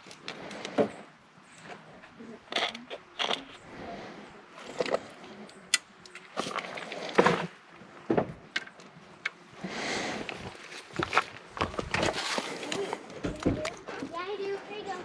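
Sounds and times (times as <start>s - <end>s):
rustling clatters: 10.1s - 15.0s.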